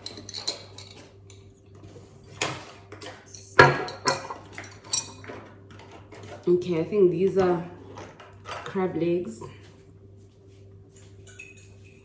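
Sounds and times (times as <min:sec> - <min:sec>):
dishes and utensils clattering: 0:00.0 - 0:06.7, 0:07.4 - 0:08.9, 0:10.9 - 0:12.0.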